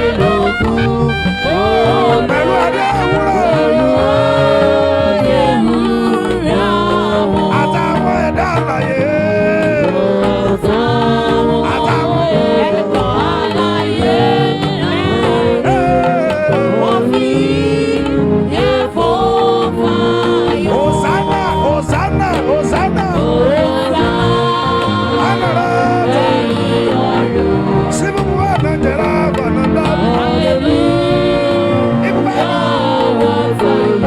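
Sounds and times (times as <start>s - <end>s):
gospel singing over band: 0.0s - 34.0s.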